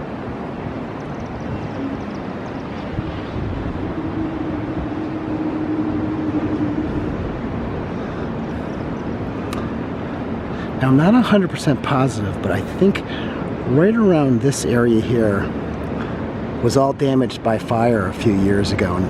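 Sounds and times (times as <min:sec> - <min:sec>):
wind on microphone: 0:00.0 - 0:10.9
distant engine droning: 0:00.0 - 0:11.4
distant traffic hum: 0:00.0 - 0:19.0.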